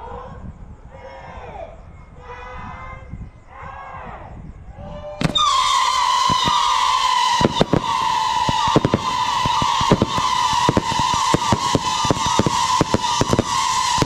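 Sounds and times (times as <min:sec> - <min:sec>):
firework cracks and bangs: 0:05.2 - 0:14.0
firework whistle: 0:05.2 - 0:14.0.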